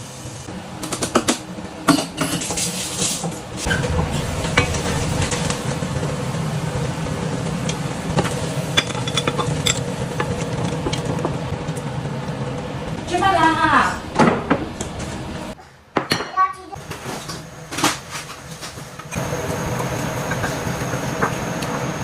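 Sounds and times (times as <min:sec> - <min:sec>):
steady low rush: 0:03.5 - 0:08.8, 0:11.4 - 0:15.6.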